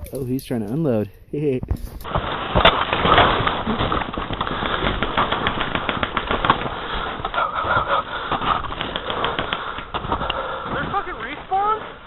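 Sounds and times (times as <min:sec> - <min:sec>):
airsoft guns firing: 0:02.1 - 0:11.4.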